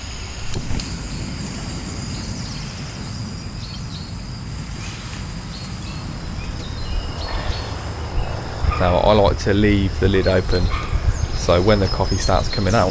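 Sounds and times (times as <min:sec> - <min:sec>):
low rumble: 0:00.0 - 0:12.9
high bird chirps: 0:05.4 - 0:12.9.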